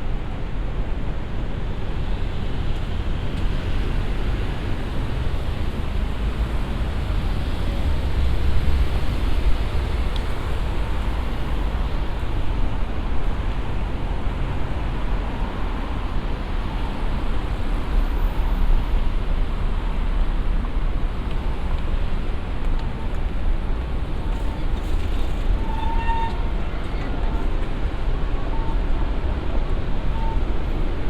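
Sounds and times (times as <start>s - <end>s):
traffic: 0.0s - 31.0s.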